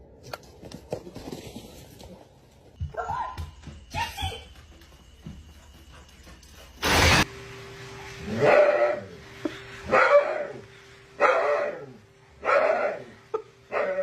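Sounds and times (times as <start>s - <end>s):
dog barking: 12.4s - 13.1s.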